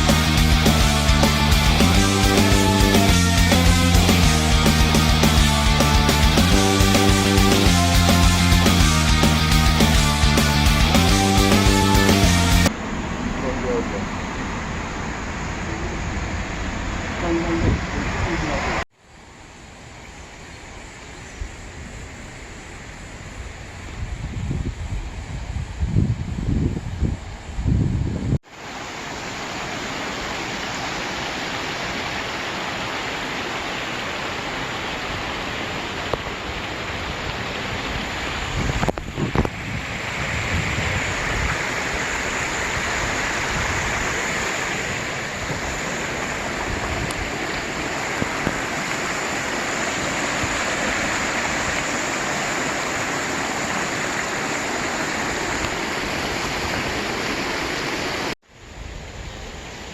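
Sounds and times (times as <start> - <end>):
stream flowing over rocks: 28.4 - 58.4.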